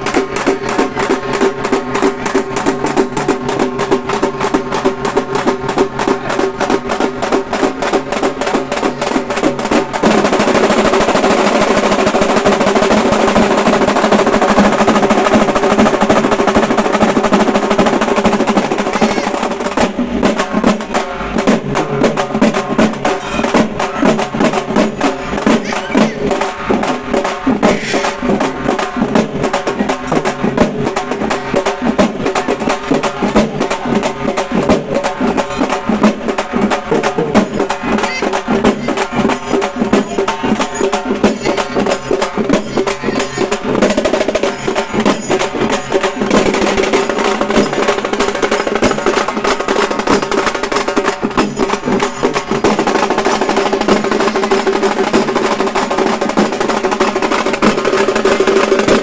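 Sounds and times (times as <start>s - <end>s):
frame drums struck with sticks: 0.0s - 59.0s.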